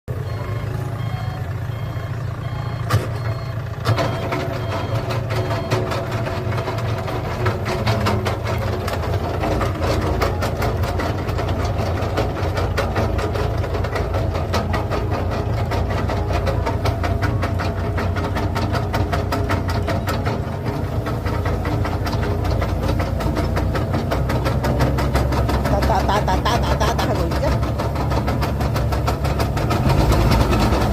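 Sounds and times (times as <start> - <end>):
short beep: 0.1 - 6.6
tractor engine running: 0.1 - 30.9
fast clattering rattle: 4.8 - 30.9.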